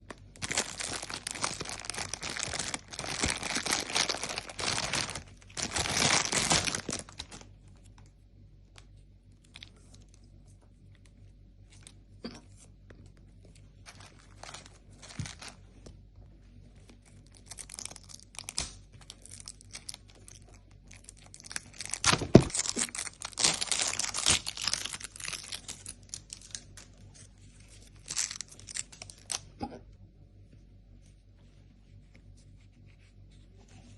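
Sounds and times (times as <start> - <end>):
plastic packaging crinkling: 0.0 - 8.1, 13.8 - 15.7, 16.9 - 29.5.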